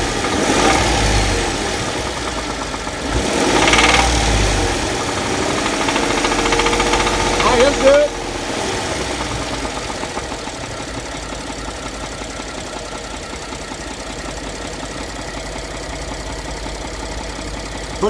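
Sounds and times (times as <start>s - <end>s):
car engine idling: 0.0s - 18.0s
engine knocking: 0.0s - 18.0s.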